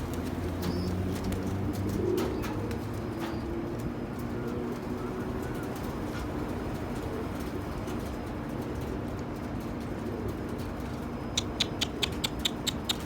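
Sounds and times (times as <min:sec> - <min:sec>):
pigeons cooing: 0:00.3 - 0:07.8.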